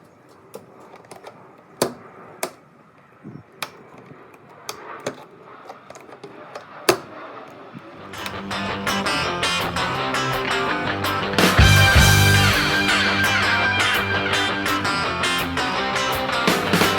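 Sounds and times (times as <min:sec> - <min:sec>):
metal coupling clicks and knocks: 0:03.6 - 0:07.1
guitar music: 0:08.0 - 0:16.9.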